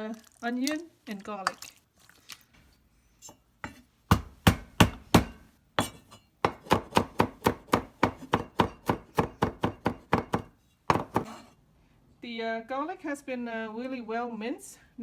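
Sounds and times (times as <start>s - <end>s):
knife chopping on cutting board: 3.7s - 11.5s.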